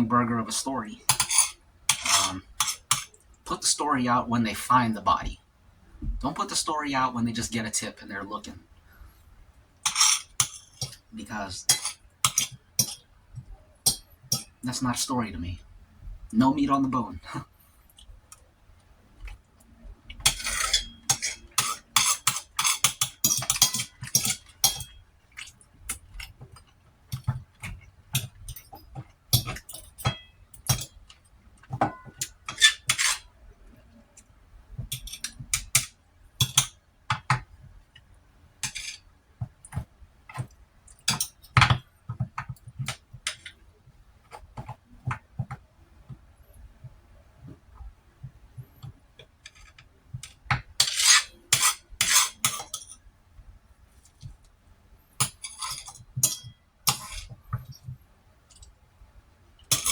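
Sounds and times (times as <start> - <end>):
utensils clinking on a plate: 1.1 - 3.2, 9.8 - 14.6, 20.1 - 33.3, 34.8 - 37.4, 38.6 - 39.0, 39.7 - 43.6, 49.4 - 53.0, 55.2 - 58.7, 59.7 - 59.9.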